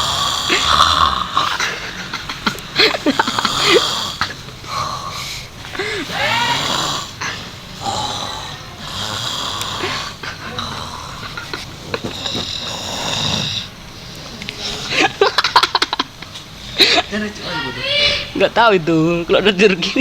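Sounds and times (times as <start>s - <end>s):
person snoring loudly: 0.0s - 2.0s, 2.8s - 13.7s
high squeaky wheezes: 5.8s - 7.1s.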